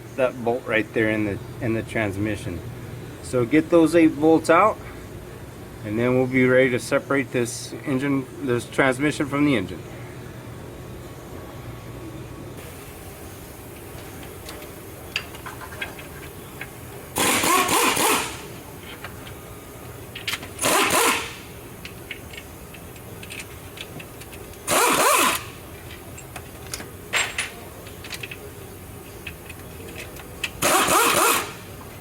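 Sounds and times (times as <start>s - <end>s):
power wrench spinning bolts: 13.7s - 19.4s, 20.1s - 28.5s, 29.1s - 31.8s.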